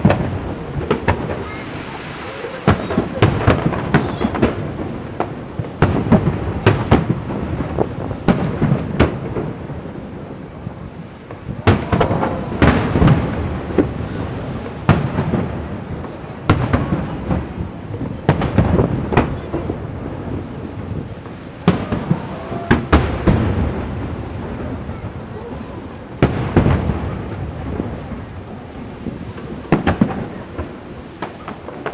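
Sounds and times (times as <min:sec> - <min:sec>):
fireworks booming: 0:00.0 - 0:31.9
fireworks crackle: 0:00.0 - 0:31.9.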